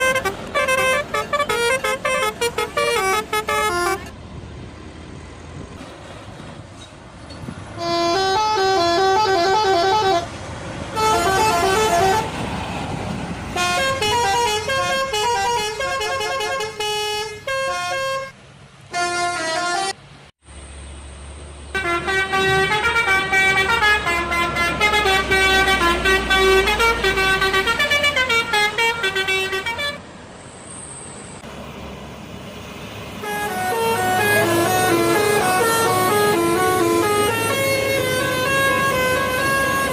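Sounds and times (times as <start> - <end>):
bus horns playing tunes: 0.0 - 4.2, 7.7 - 20.2, 21.7 - 30.1, 33.1 - 39.9.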